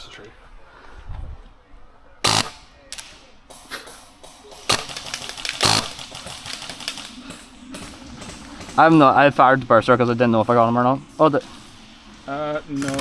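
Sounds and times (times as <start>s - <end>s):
airsoft gun firing rapid bursts: 2.3s - 2.6s, 4.7s - 7.0s.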